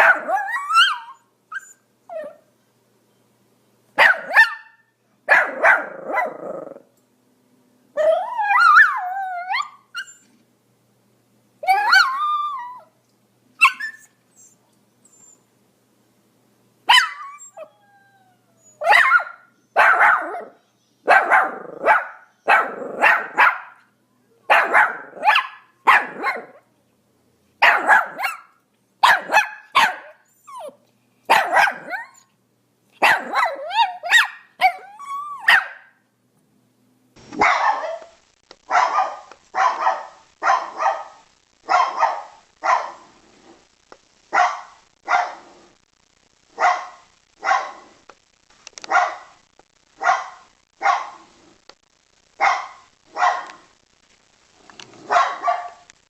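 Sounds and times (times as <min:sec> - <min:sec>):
dog barking evenly: 0:00.0 - 0:02.4, 0:04.0 - 0:06.8, 0:13.6 - 0:14.1, 0:16.9 - 0:17.7, 0:18.8 - 0:26.7, 0:27.6 - 0:32.3, 0:33.0 - 0:36.0, 0:37.4 - 0:43.1, 0:44.3 - 0:45.4, 0:46.6 - 0:47.9, 0:48.9 - 0:49.4, 0:50.0 - 0:51.3, 0:52.4 - 0:53.7, 0:55.0 - 0:55.9
dog barking and yelping: 0:00.0 - 0:02.5, 0:04.0 - 0:06.9, 0:08.0 - 0:10.4, 0:11.6 - 0:12.9, 0:13.6 - 0:15.4, 0:16.9 - 0:26.7, 0:27.6 - 0:32.3, 0:33.0 - 0:36.0, 0:37.4 - 0:43.1, 0:44.3 - 0:45.5, 0:46.5 - 0:47.9, 0:48.8 - 0:49.4, 0:50.0 - 0:51.3, 0:52.4 - 0:53.7, 0:55.0 - 0:55.9.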